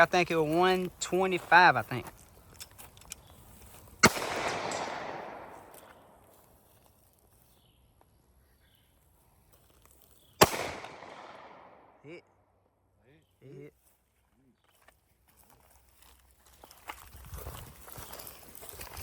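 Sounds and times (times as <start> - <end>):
pistol shots with echo: 4.0 - 6.2, 10.4 - 12.0.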